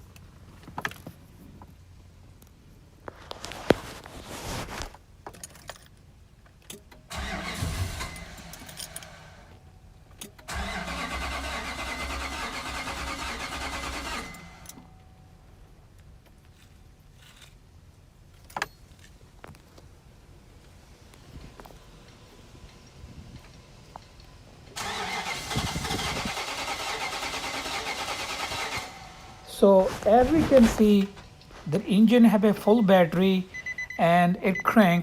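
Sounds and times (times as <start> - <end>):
engine starter cranking: 6.7 - 9.6, 10.2 - 14.9, 24.7 - 31.6.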